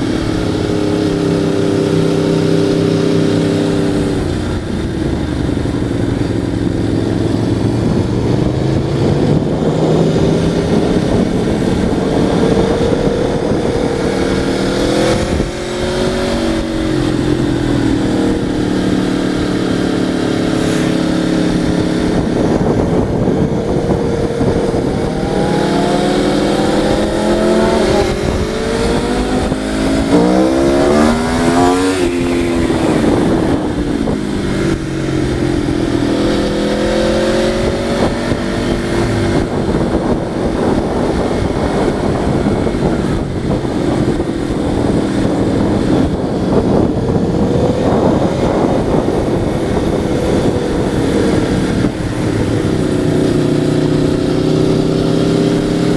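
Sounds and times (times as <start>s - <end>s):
vehicle engine revving: 0.0s - 55.9s.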